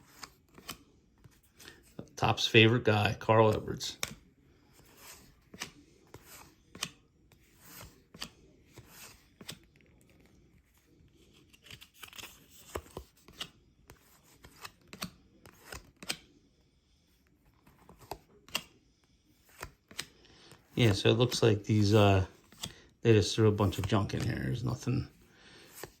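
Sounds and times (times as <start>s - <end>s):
trading cards flipped by hand: 0.0s - 1.9s, 3.5s - 10.4s, 11.2s - 16.3s, 17.5s - 18.8s, 19.4s - 22.8s.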